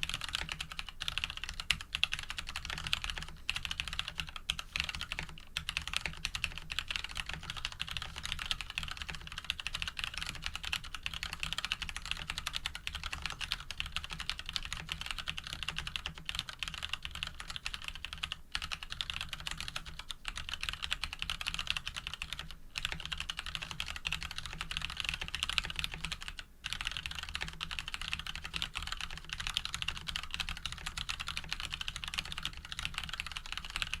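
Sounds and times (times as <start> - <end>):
mechanical keyboard typing: 0.0 - 34.0.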